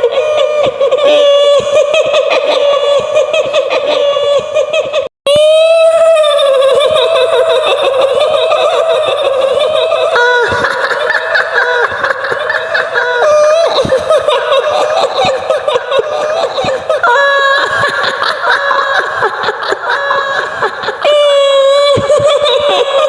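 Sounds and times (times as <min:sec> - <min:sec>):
high-pitched woman laughing: 0:00.0 - 0:23.0.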